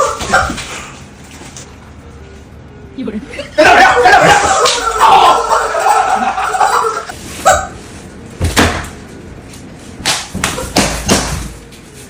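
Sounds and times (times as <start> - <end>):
sharp smacks: 10.0 - 11.3.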